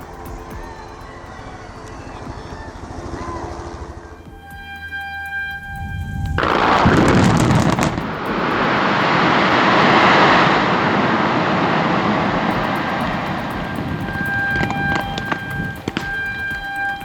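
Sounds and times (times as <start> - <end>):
sharp cracks: 6.4 - 17.0.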